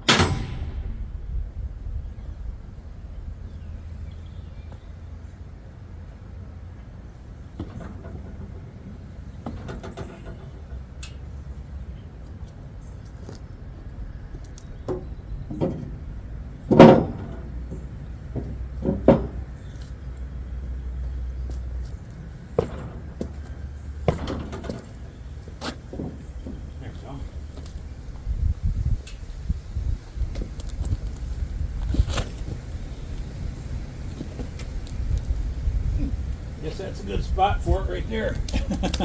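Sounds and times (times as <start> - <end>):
low steady rumble: 0.0 - 39.0
log clanking and knocking: 14.8 - 19.7, 22.6 - 27.9.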